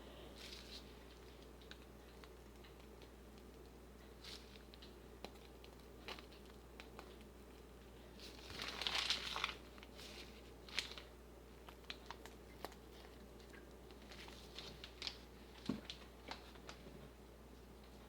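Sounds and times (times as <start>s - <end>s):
plastic piping bag crinkling: 0.3s - 17.0s.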